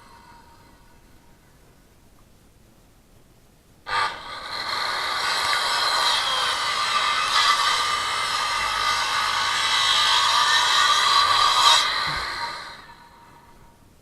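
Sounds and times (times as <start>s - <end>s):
angle grinder high whine: 3.9s - 13.8s.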